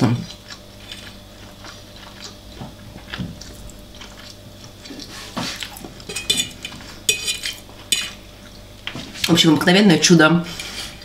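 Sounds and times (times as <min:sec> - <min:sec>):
wet chewing: 0:00.2 - 0:06.1
cutlery clinking against dish: 0:06.1 - 0:08.2.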